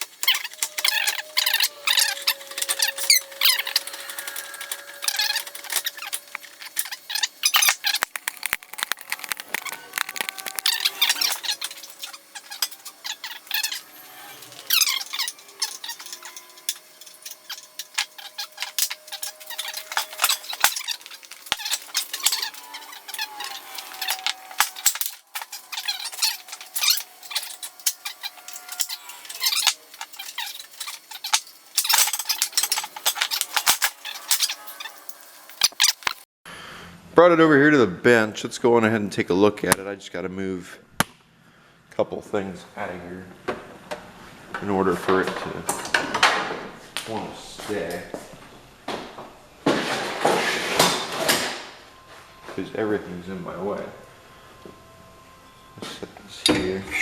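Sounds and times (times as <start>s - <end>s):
metal squeaks: 0.0s - 36.3s.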